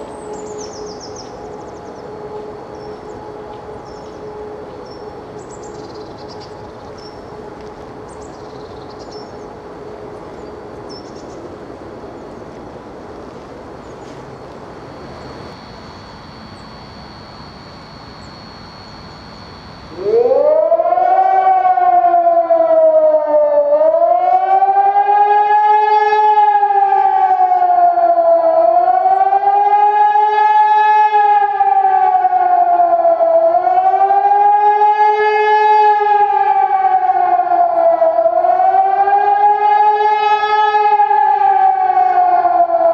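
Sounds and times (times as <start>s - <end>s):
quiet outdoor background: 0.0s - 23.8s
electronic siren wailing: 0.1s - 5.1s, 14.3s - 42.9s.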